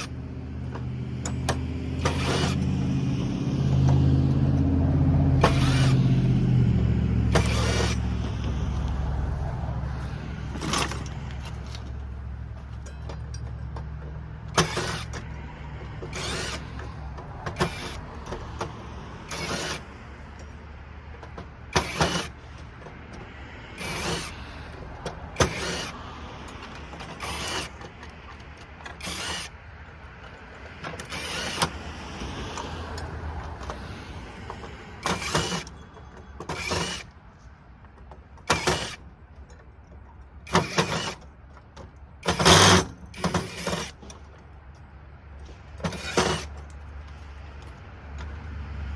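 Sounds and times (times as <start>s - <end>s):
metal clanking: 9.9s - 18.7s.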